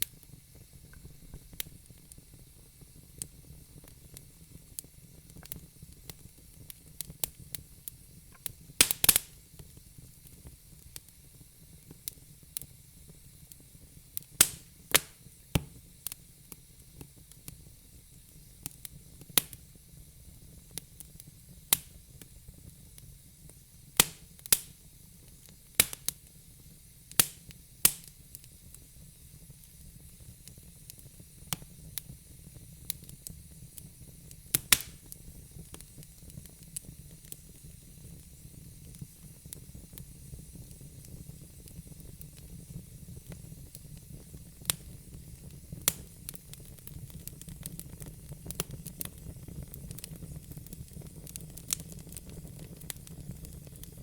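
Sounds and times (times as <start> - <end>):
faint steady hiss: 0.0 - 54.0
fire crackling and popping: 0.0 - 54.0.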